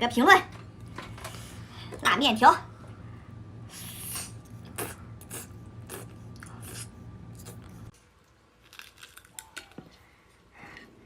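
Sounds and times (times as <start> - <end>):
steady low hum: 0.0 - 8.0
person chewing noodles: 3.7 - 10.4.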